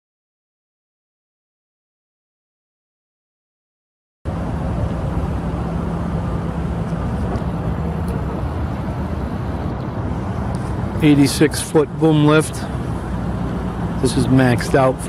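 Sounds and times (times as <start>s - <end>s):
engine running: 4.3s - 15.0s.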